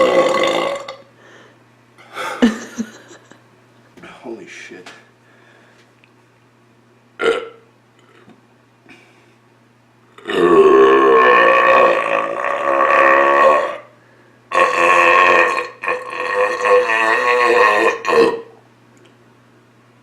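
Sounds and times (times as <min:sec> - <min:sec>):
long loud belches: 0:00.0 - 0:01.1, 0:07.2 - 0:07.6, 0:10.2 - 0:13.9, 0:14.5 - 0:18.6.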